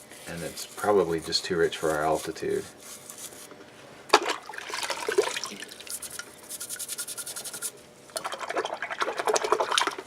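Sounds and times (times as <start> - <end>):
brush scrubbing metal part: 0.0 - 3.5, 5.8 - 7.8.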